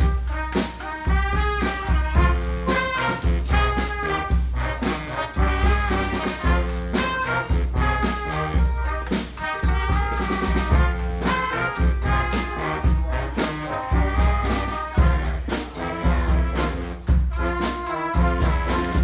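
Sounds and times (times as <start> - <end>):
drums beating: 0.0 - 19.0
trumpets and trombones: 0.0 - 19.0.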